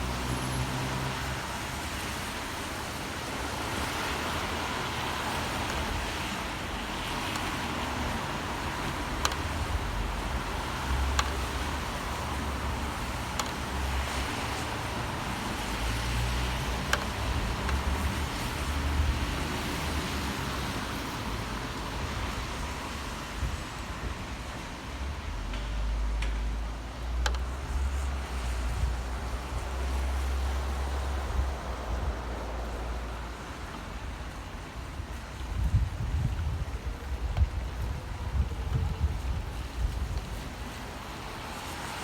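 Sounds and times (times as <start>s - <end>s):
passing vehicles rumbling: 0.0s - 42.0s
tyres hissing on wet road: 0.0s - 42.0s
sharp ticks: 8.7s - 14.6s.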